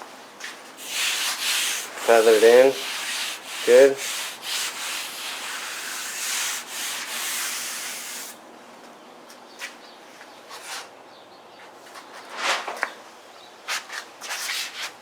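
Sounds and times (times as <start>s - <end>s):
sandpaper scratching body filler: 0.8s - 8.4s
light scrapes: 12.2s - 13.0s.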